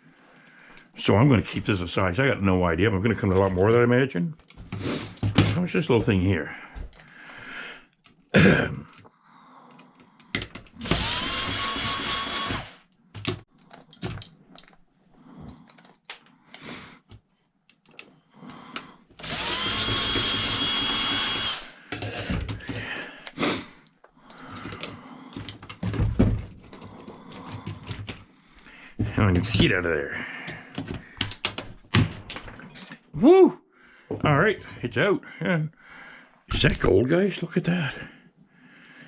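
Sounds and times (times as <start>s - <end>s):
clicks and knocks of parts handled: 4.4s - 6.2s, 6.8s - 7.2s, 9.7s - 11.0s, 12.9s - 19.3s, 21.9s - 28.6s, 30.4s - 33.1s
power drill whining: 10.6s - 12.9s, 19.2s - 22.7s.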